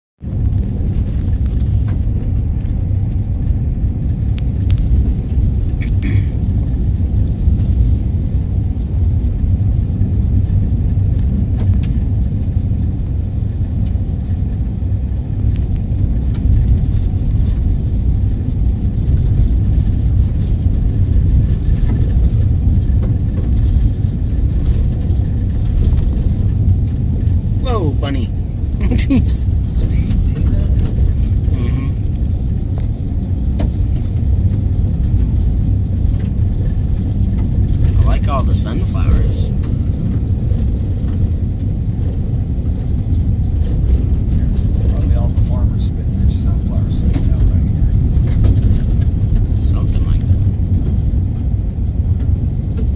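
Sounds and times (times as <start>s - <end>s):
vehicle engine and road noise: 0.2s - 52.9s.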